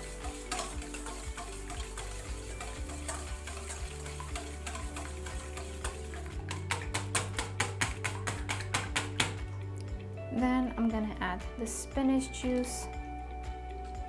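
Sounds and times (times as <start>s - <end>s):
whisk clicking against bowl: 0.1s - 9.4s.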